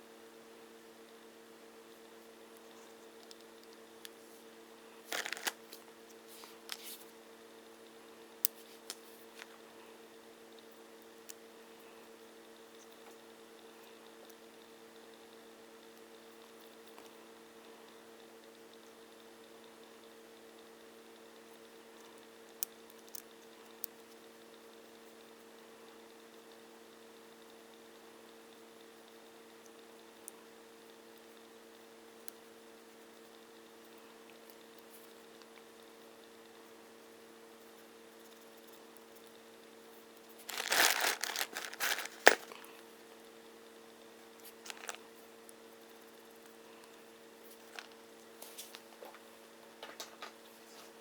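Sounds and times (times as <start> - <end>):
low electrical hum: 0.0 - 51.0
crinkling handling noise: 4.1 - 7.1, 40.3 - 42.9, 44.4 - 45.2, 47.4 - 51.0.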